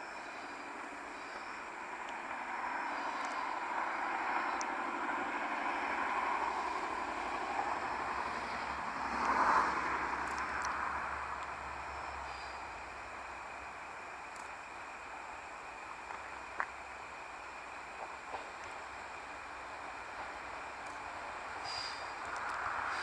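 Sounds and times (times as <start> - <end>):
vehicle rushing noise: 1.9 - 13.2
faint clicks: 10.2 - 10.8.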